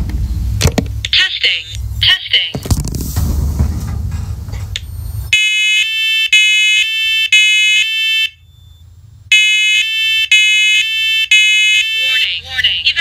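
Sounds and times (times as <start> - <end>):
low rumbling noise: 0.0 - 5.4
smoke alarm beeping: 4.8 - 12.2.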